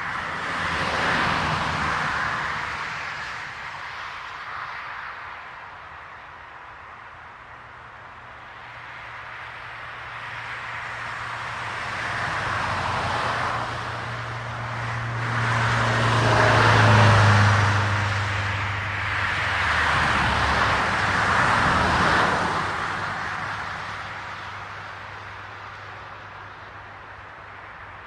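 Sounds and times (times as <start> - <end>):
cars passing on asphalt: 0.0 - 28.0.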